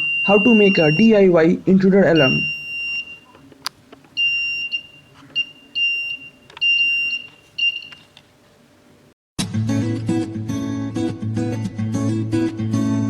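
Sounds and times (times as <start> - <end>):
buzzer alarm beeps: 0.0 - 1.3, 2.1 - 3.4, 4.2 - 8.1.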